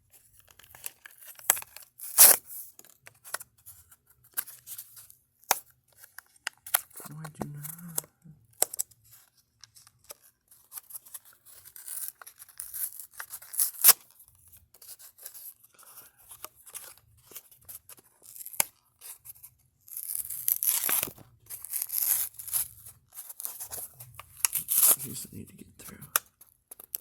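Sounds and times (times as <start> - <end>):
packaging tearing and rustling: 19.9 - 25.1.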